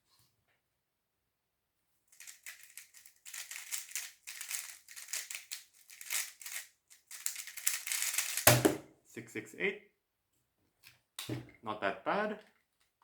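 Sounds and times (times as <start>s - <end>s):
puzzle cube clicking and rattling: 2.2s - 8.8s.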